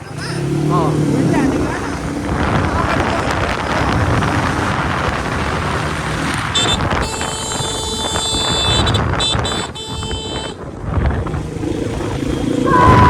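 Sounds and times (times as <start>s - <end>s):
vehicle running: 0.0s - 13.0s
wind buffeting microphone: 0.0s - 13.0s
high horn toot: 6.5s - 10.7s.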